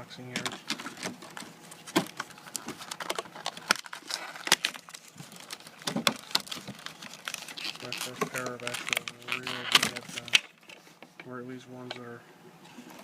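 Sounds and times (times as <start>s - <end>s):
packaging crinkling: 0.4s - 10.8s.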